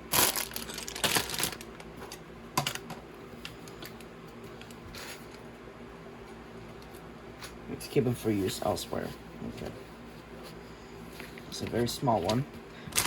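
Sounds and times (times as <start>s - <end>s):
faint steady hum: 0.0s - 13.0s
plastic bags and booklets clicking: 0.1s - 2.9s, 11.5s - 13.0s.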